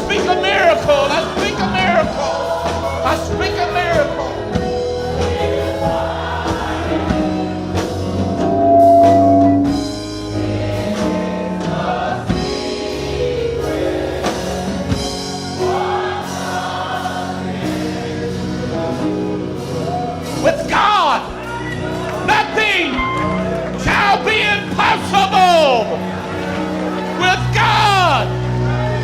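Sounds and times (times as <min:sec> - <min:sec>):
choir and congregation singing: 0:00.0 - 0:20.4, 0:24.5 - 0:29.0
live band playing: 0:06.2 - 0:15.6.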